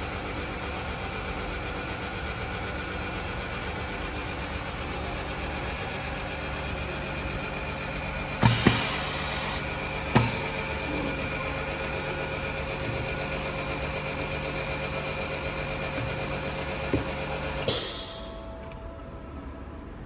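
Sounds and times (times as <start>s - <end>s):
machine humming: 0.0s - 18.9s
burst of hiss: 8.4s - 10.6s.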